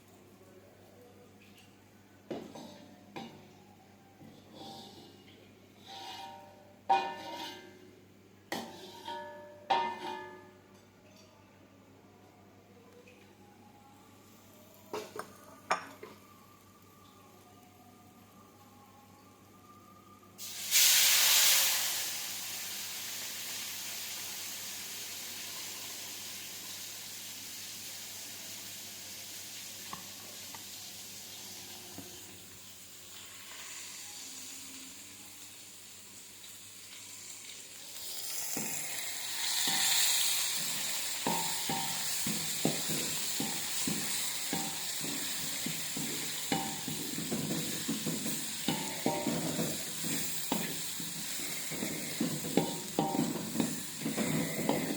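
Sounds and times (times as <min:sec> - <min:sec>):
utensil scraping a pan: 0:04.3 - 0:05.2, 0:05.8 - 0:07.8, 0:08.6 - 0:10.3, 0:39.6 - 0:54.9
food sizzling in hot oil: 0:20.4 - 0:54.9.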